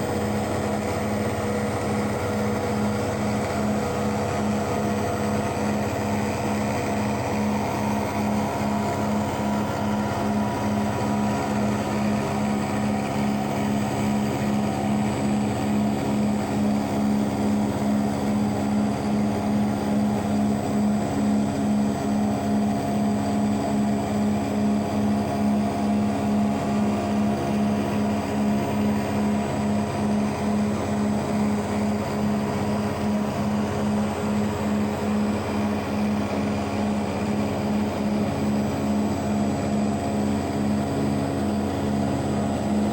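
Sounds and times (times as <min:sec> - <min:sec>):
cnc router humming: 0:00.0 - 0:22.8.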